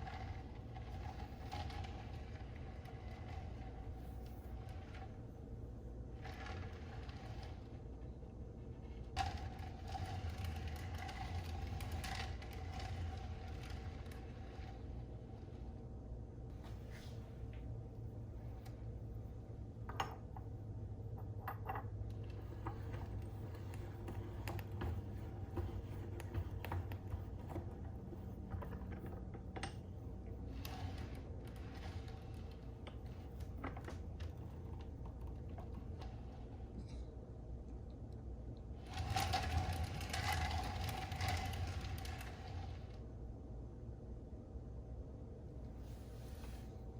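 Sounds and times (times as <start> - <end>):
metal mechanism scraping and creaking: 0.0 - 15.8, 21.6 - 37.1, 38.8 - 43.0
low steady hum: 0.0 - 46.9.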